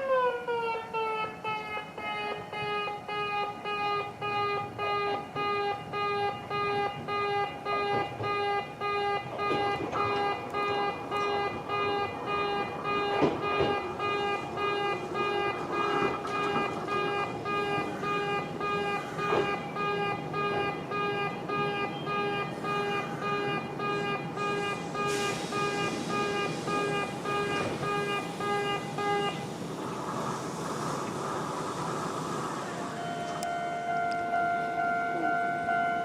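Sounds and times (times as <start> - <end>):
level crossing alarm buzzy tone: 1.4 - 29.4
rushing noise: 22.5 - 35.1.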